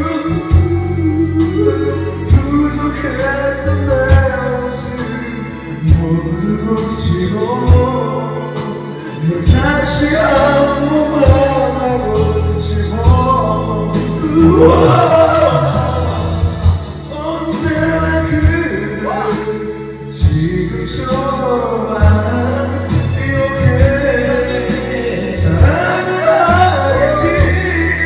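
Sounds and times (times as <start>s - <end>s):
person singing karaoke: 0.0s - 28.0s
drum hit and bass note: 14.0s - 18.7s.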